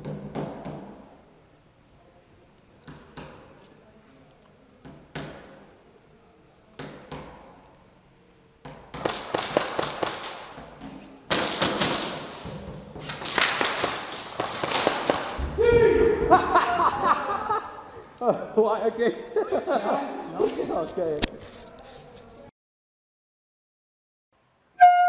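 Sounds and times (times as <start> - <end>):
airsoft guns firing: 8.9 - 15.6.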